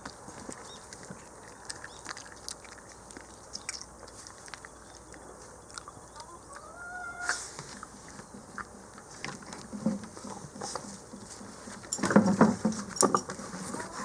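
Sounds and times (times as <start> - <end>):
dog chewing meat: 0.0 - 6.6.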